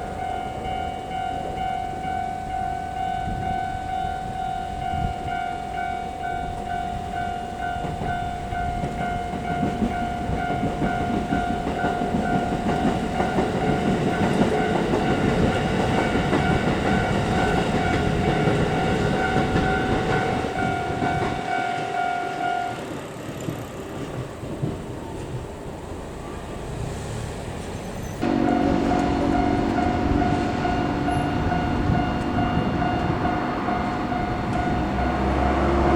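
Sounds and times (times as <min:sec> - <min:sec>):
railway crossing electronic bell: 0:00.0 - 0:26.5, 0:27.8 - 0:35.9
train wheels rumbling on rails: 0:00.0 - 0:35.9
steady low tone: 0:28.2 - 0:35.9.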